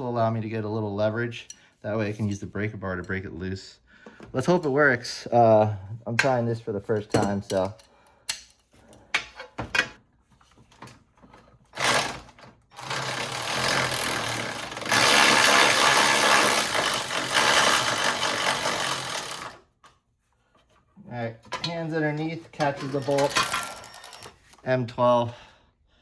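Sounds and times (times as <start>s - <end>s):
socket tool clicking: 7.1s - 10.0s
tool rattling spinning bolt: 11.8s - 19.6s, 21.6s - 24.5s.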